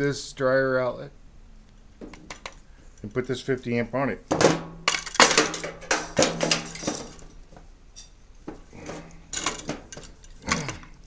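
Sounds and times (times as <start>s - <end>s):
metal objects clinking: 4.4s - 8.2s, 8.8s - 10.9s.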